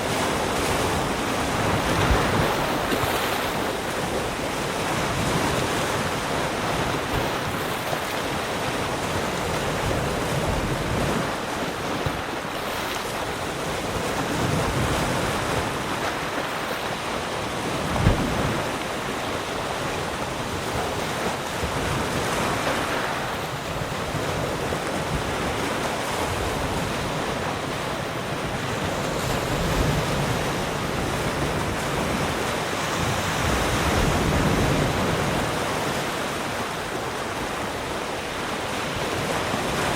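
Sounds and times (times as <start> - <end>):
waves lapping around rocks: 0.0 - 39.9
brief thump: 18.0 - 18.4.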